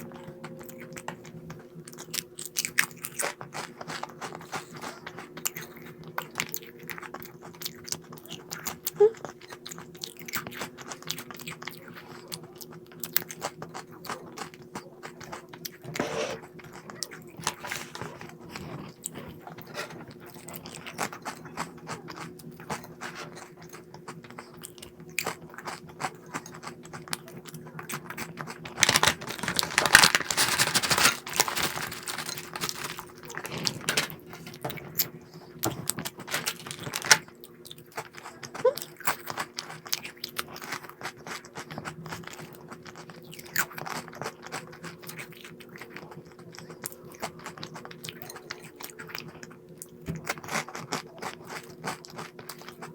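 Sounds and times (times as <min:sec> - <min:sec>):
crunchy snack being chewed: 0:00.0 - 0:52.9.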